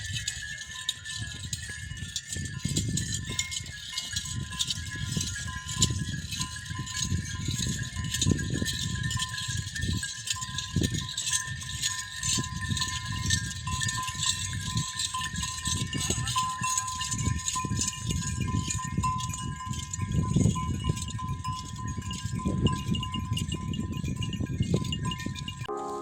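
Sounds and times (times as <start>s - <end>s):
faint chime-like notes: 24.8s - 26.0s
thin high tone: 25.7s - 26.0s.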